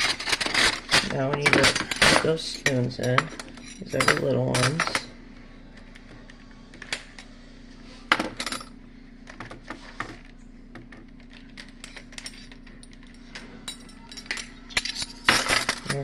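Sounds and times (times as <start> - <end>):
metal spoons clinking: 13.7 - 16.0.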